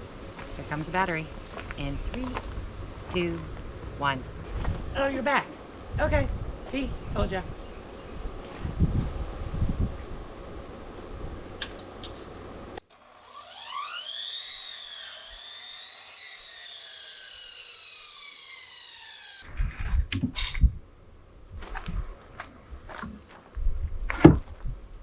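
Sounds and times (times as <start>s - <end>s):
power tool motor whining: 12.9s - 19.4s
sharp knocks and clatters: 24.1s - 24.7s.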